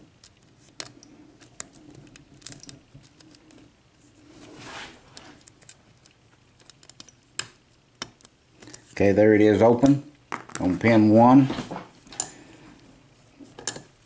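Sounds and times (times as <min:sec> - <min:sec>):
lock pick clicking and scraping: 0:00.2 - 0:03.6, 0:05.4 - 0:08.8.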